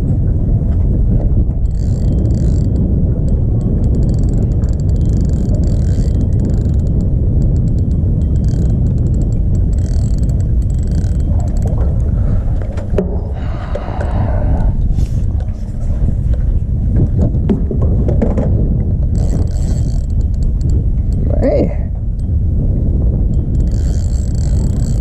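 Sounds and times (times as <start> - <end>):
wind rumble on microphone: 0.0 - 25.0
fishing reel clicking: 1.6 - 11.8, 19.1 - 21.4, 23.3 - 25.0.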